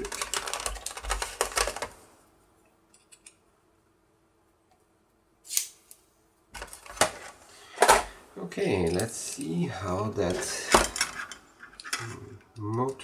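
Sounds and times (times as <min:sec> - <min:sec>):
plastic parts clicking and rattling: 0:00.0 - 0:02.0, 0:10.3 - 0:13.0.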